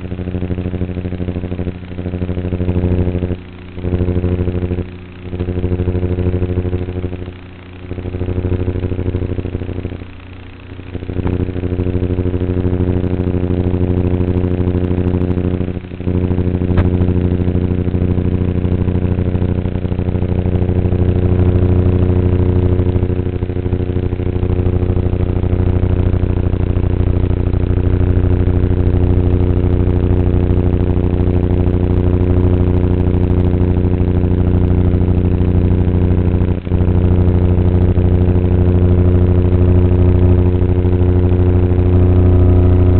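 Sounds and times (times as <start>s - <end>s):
model plane propeller droning: 0.0s - 42.9s.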